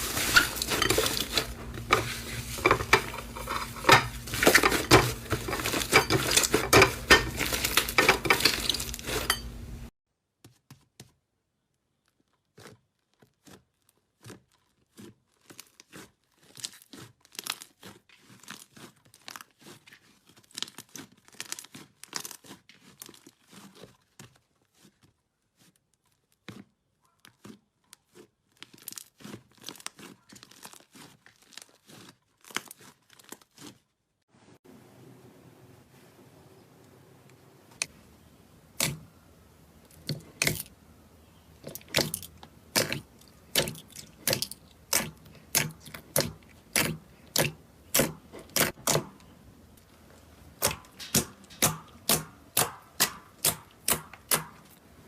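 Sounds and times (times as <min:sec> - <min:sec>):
slime crackling: 0:11.9 - 0:34.2, 0:39.7 - 0:55.0.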